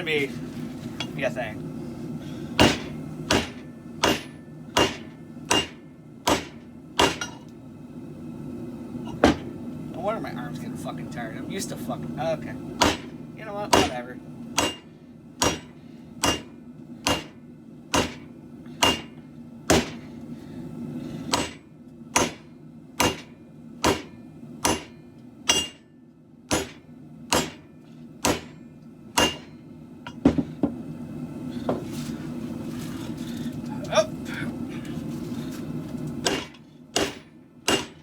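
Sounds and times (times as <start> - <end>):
forge burner hum: 0.0 - 38.0
hammer striking steel on anvil: 2.6 - 7.5, 12.8 - 14.0, 14.6 - 20.0, 21.3 - 25.9, 26.5 - 30.4, 36.2 - 38.0.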